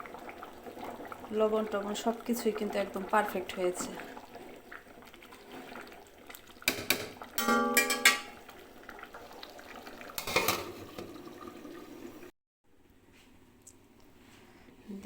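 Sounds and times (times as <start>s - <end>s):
utensil knocking cooking pot: 6.6s - 8.4s.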